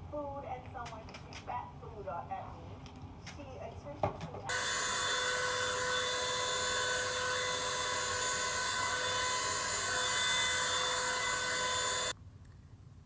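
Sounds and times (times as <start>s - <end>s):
hair dryer fan whine: 4.5s - 12.2s.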